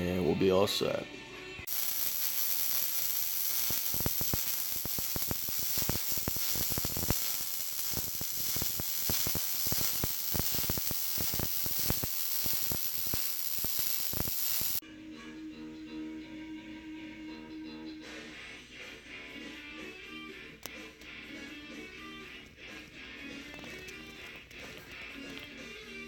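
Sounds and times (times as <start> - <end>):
electric arc welding crackle: 1.7 - 14.8.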